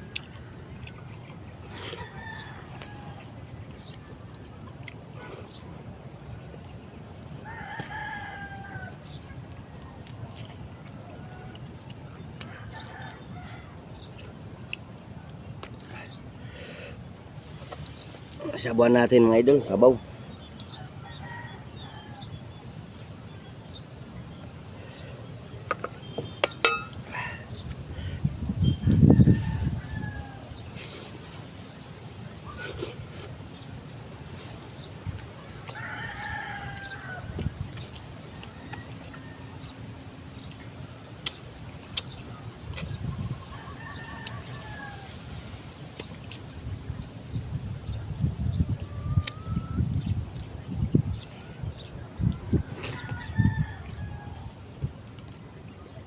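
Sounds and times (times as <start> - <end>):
metal spoon clinking against dish: 25.7 - 27.1
rooster crowing: 29.0 - 30.6, 52.9 - 54.4.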